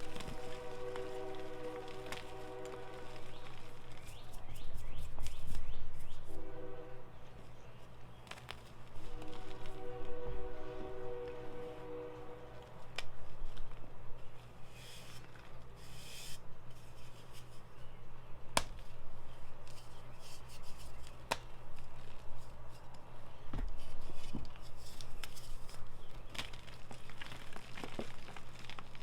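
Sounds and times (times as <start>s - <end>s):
chalk crunching by hand: 0.0s - 6.4s
low steady hum: 0.0s - 29.0s.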